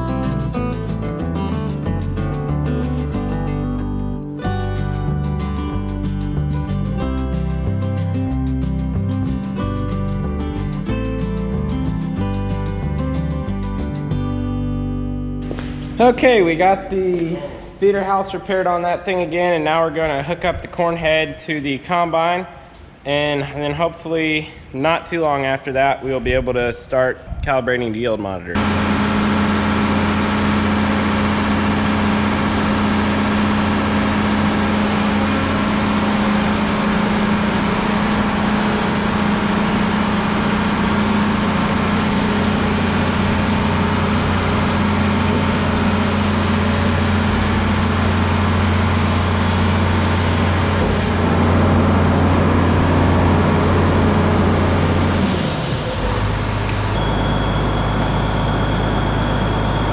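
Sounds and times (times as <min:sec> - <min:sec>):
diesel engine running: 0:00.0 - 0:17.7, 0:28.6 - 0:59.9
faint high whine: 0:55.4 - 0:59.9.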